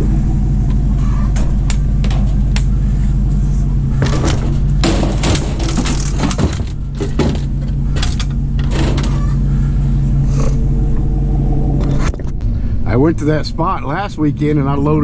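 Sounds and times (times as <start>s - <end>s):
truck engine idling: 0.0s - 15.0s
scrap metal clattering: 1.0s - 9.7s.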